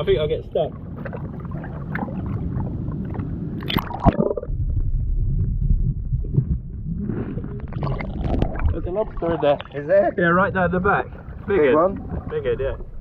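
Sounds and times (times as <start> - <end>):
muffled underwater rumble: 0.0 - 13.0
seawater sloshing and gurgling: 0.0 - 13.0
water splash: 0.7 - 5.0, 6.1 - 9.8.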